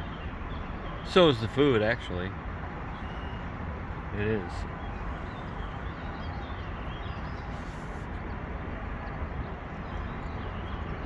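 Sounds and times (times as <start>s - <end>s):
small birds chirping: 4.1s - 8.4s.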